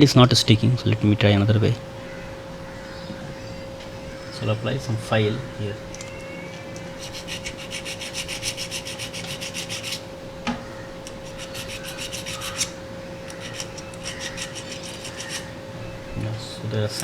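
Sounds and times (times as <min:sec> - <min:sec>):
file scraping on metal: 0:06.8 - 0:10.1, 0:11.0 - 0:15.5.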